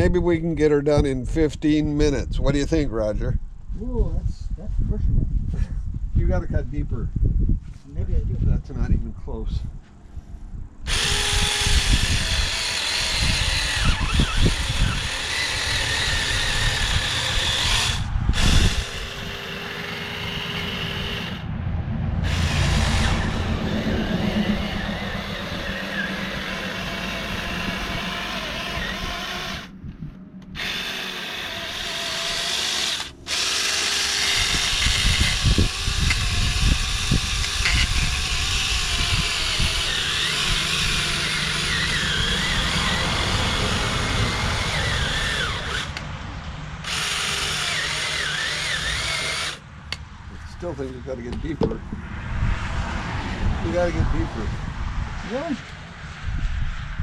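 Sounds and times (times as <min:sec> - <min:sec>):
small chainsaw cutting: 0:10.9 - 0:21.4, 0:22.2 - 0:29.7, 0:30.6 - 0:46.1, 0:46.8 - 0:49.6.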